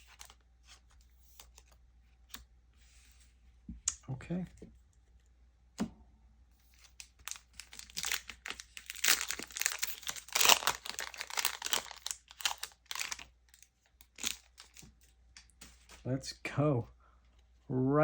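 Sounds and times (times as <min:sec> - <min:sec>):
foil wrapper crinkling and tearing: 0:00.0 - 0:00.4, 0:06.7 - 0:15.1.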